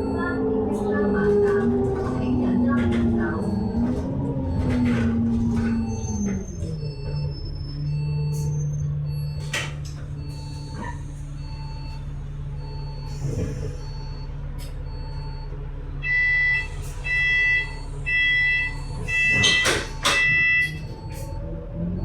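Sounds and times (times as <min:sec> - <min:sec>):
loud electronic door warning beeps: 0:00.0 - 0:21.5
bus engine humming: 0:00.0 - 0:22.0
bus doors hissing and clattering: 0:09.4 - 0:12.1, 0:13.0 - 0:14.9, 0:16.2 - 0:21.4.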